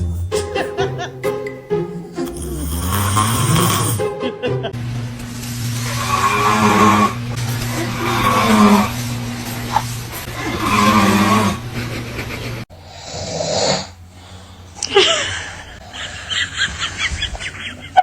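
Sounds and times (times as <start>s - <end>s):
man snoring loudly: 2.0s - 4.1s, 5.8s - 9.0s, 9.7s - 11.8s, 12.8s - 14.5s.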